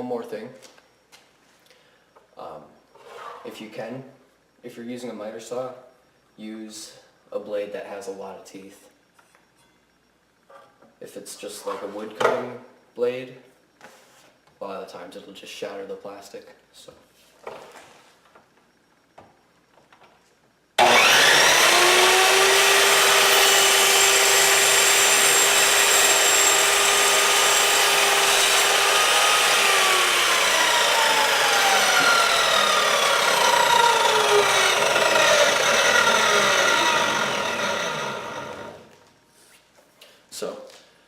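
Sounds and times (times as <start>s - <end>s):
miter saw whining: 20.8s - 39.0s.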